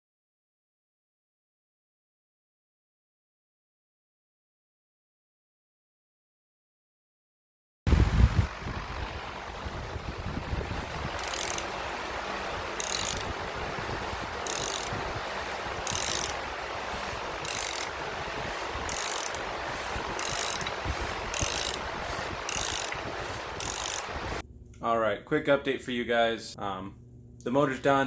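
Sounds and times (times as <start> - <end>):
steady hiss: 7.9 - 24.4
high ratcheting scrape: 10.6 - 24.4.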